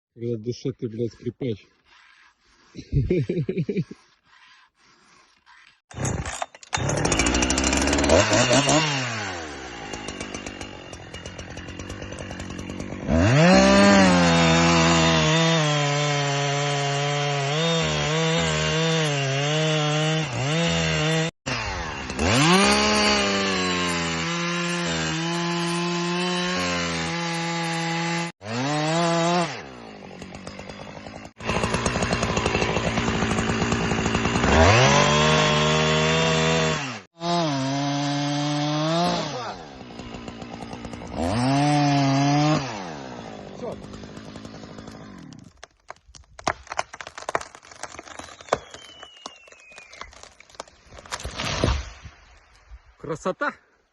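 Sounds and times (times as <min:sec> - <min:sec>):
chainsaw revving while cutting: 0:06.8 - 0:45.4.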